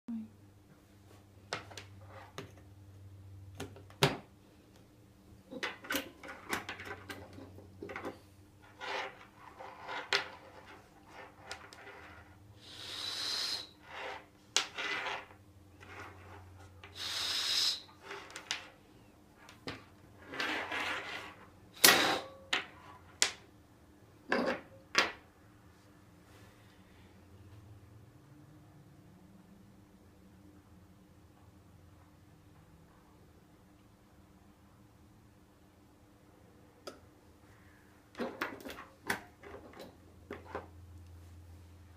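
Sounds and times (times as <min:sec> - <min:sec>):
breath blown in hissing gusts: 0:12.6 - 0:13.8, 0:17.0 - 0:17.9.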